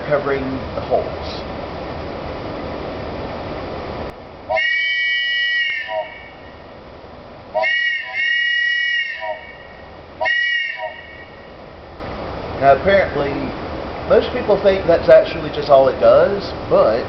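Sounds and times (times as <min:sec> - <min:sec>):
wooden train whistle blasts: 0:04.5 - 0:06.4, 0:07.6 - 0:11.4.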